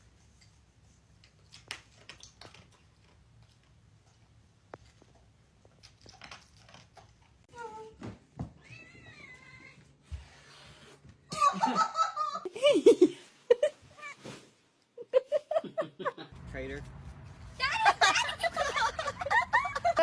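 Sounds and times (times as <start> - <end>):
cat meowing: 8.6 - 9.8.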